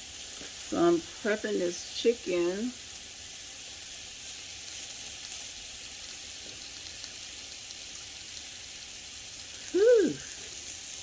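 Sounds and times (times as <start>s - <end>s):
food sizzling in hot oil: 0.0s - 11.0s.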